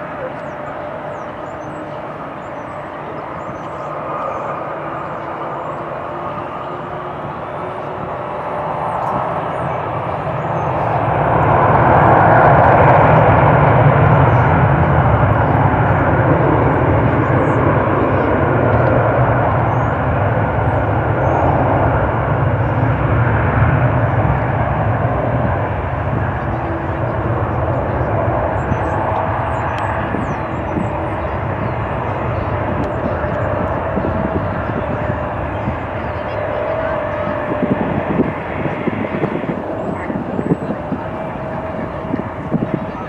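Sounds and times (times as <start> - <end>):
jet engines passing close: 0.0 - 43.0.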